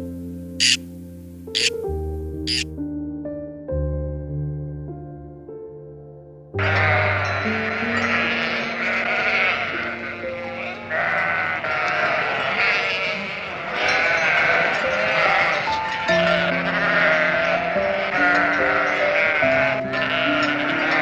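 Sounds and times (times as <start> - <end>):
music with held notes: 0.0 - 12.2, 13.8 - 21.0
sheep bleating: 6.6 - 21.0.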